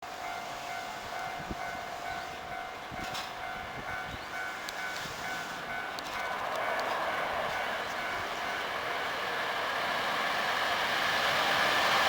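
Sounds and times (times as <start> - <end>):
level crossing warning bell: 0.2 - 9.0.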